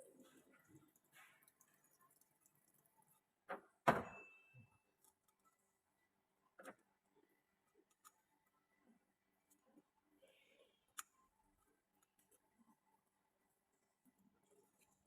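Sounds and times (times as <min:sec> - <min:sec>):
metallic ring: 0:04.0 - 0:04.8.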